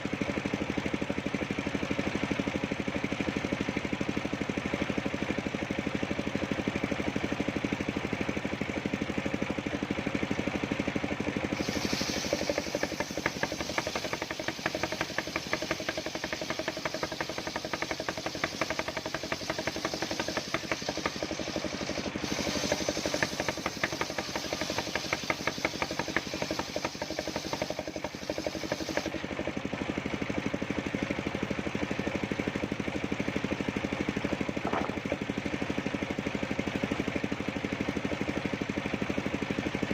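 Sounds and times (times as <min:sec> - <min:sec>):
sawmill engine running: 0:00.0 - 0:39.9
saw blade rasping through wood: 0:11.5 - 0:29.2.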